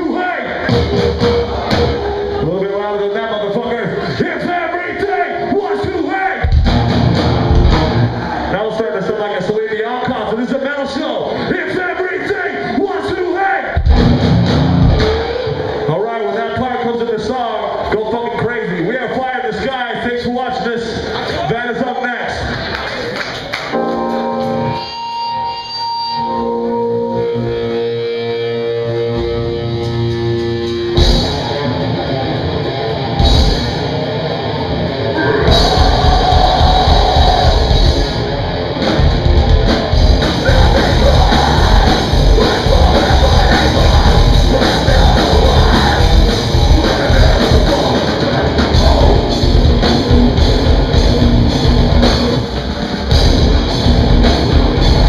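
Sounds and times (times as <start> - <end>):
heavy metal band playing: 0.0 - 21.1, 23.7 - 55.0
electric guitar sustained notes: 23.7 - 55.0.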